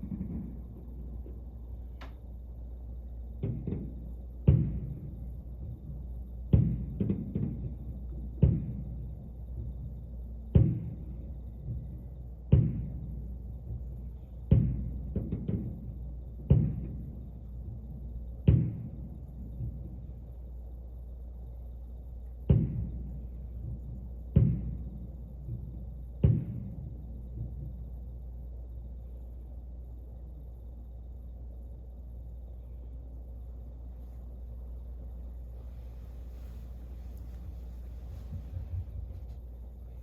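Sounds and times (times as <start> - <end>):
fireworks booming: 0.0 - 2.2, 3.0 - 20.4, 22.4 - 28.0, 35.3 - 40.0
low hum: 0.0 - 40.0
smaller thuds: 3.0 - 20.3, 35.0 - 40.0.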